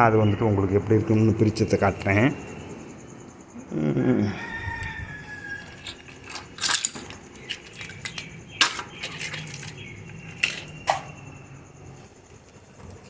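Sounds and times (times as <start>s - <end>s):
metal parts clicking and clinking: 5.5s - 11.1s.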